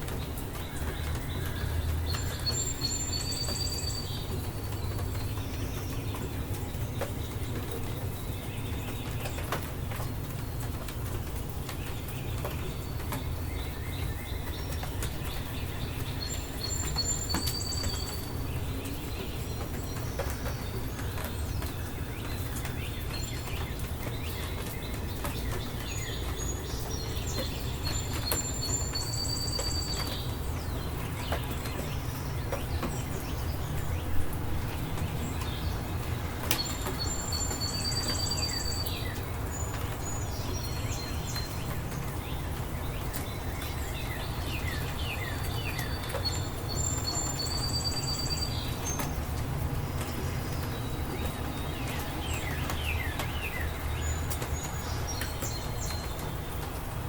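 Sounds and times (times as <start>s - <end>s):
drips and ticks: 0.0s - 57.0s
songbird singing with trill: 0.0s - 57.0s
steady rain: 0.0s - 57.0s.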